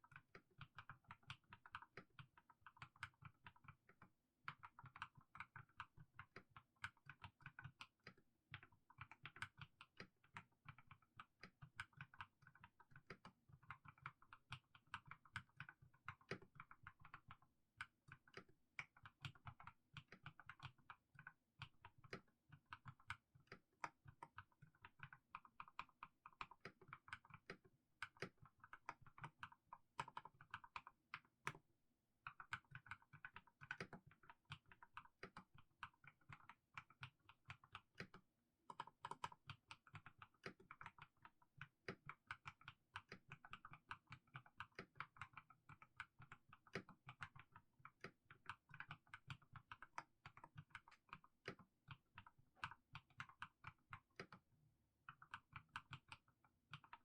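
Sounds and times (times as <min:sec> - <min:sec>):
mechanical keyboard typing: 0:22.1 - 0:31.6, 0:32.2 - 0:54.4.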